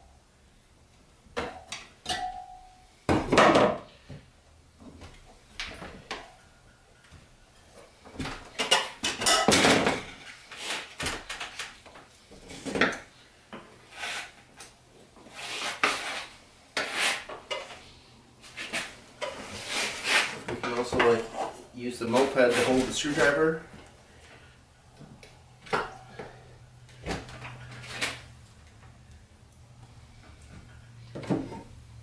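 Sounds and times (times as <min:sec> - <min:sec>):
screwdrivers scraping metal rim: 0:15.3 - 0:17.8.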